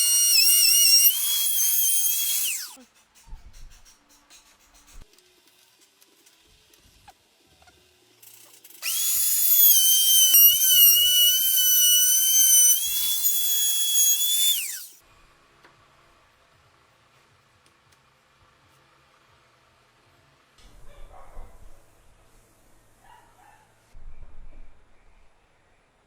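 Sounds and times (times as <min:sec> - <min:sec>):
power drill whining: 0:00.0 - 0:02.8, 0:08.2 - 0:15.0.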